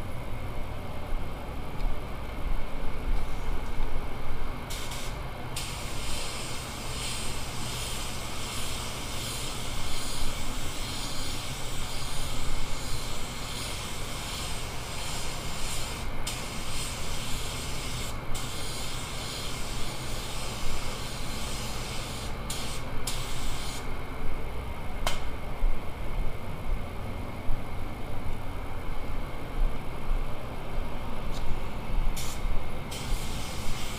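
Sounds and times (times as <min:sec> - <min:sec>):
paint spray gun hissing: 0:04.7 - 0:23.8, 0:32.2 - 0:33.9.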